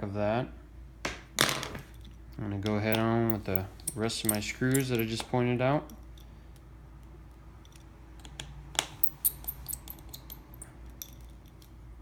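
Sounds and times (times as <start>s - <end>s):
small metal tools clicking: 2.9s - 5.3s, 7.6s - 11.8s.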